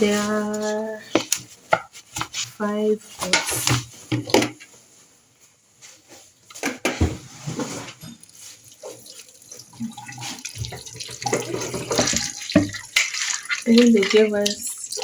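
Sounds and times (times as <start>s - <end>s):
metal pots knocking and clinking: 3.2s - 4.6s, 7.9s - 15.0s.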